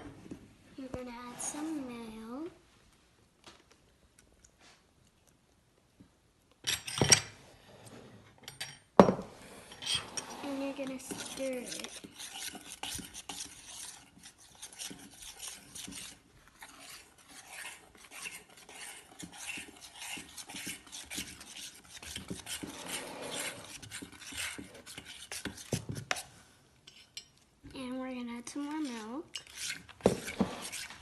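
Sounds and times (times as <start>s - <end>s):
spoon stirring in a bowl: 9.6s - 27.5s, 28.4s - 31.0s.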